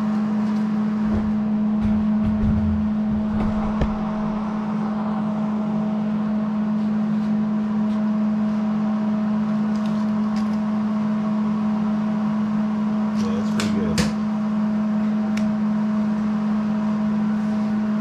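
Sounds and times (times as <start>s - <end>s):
electrical hum and buzz: 0.0s - 18.0s
dull knocks: 1.0s - 4.5s.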